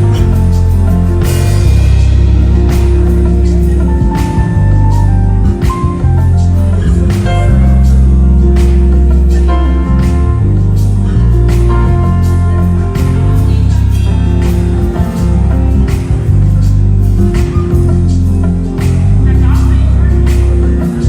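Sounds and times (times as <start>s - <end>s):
drum hits: 0.0s - 7.9s
electric bass deep notes: 0.0s - 21.0s
live gospel band playing: 0.0s - 21.0s.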